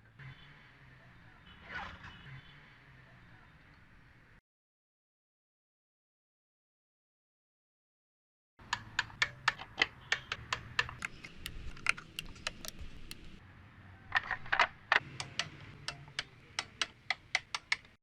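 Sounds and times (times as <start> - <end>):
engine clicking knock: 8.7 - 13.3
car engine humming: 8.7 - 13.4.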